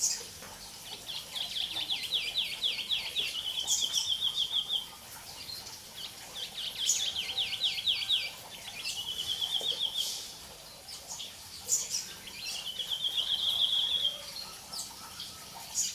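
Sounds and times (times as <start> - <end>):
songbird singing: 6.3 - 10.2, 11.8 - 15.9.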